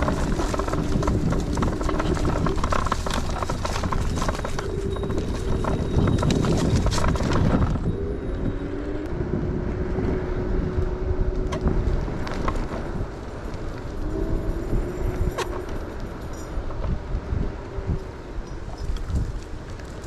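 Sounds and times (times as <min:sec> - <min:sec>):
scooter clattering over bumps: 0:00.0 - 0:08.2, 0:11.4 - 0:17.3
wind rumbling on microphone: 0:00.0 - 0:20.0.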